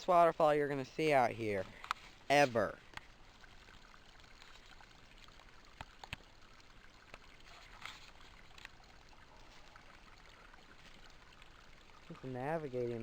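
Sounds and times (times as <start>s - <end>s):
creek trickling over rocks: 0.0s - 13.0s.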